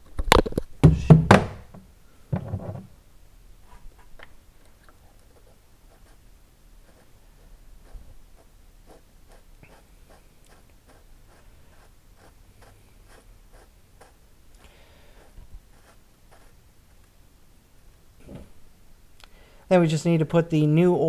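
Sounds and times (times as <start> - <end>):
knock: 0.8 - 2.9.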